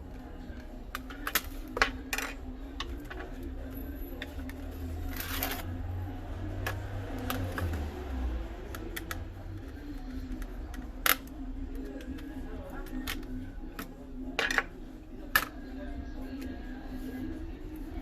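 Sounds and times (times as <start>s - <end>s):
small parts clicking and tapping: 8.7s - 14.7s.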